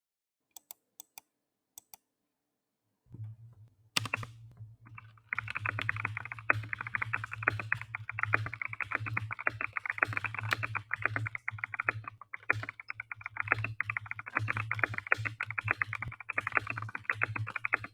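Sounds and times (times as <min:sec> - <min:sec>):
mechanical keyboard typing: 0:04.0 - 0:17.9.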